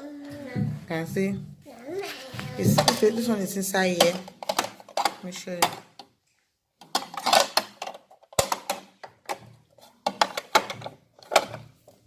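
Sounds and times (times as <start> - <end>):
plastic and metal parts clattering: 2.4 - 12.0.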